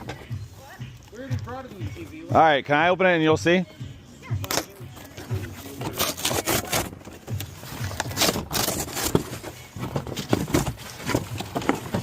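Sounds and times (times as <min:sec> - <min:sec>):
wrapping rustling and tearing: 0:05.4 - 0:12.0.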